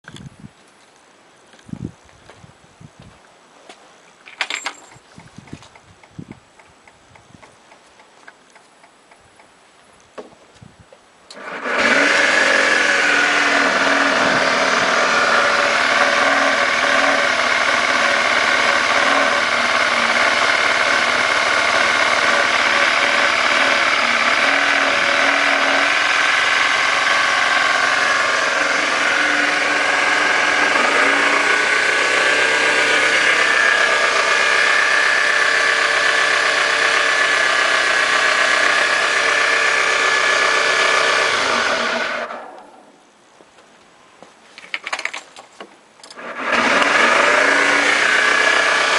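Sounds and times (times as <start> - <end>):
abnormal engine knocking noise: 11.4 - 42.3, 46.2 - 48.9
scooter engine running: 11.4 - 42.8, 46.2 - 48.9.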